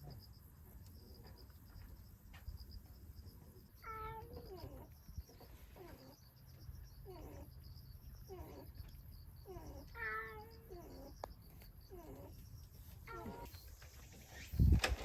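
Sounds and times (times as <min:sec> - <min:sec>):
cat meowing: 0:03.8 - 0:04.9, 0:09.5 - 0:11.1, 0:13.1 - 0:13.6.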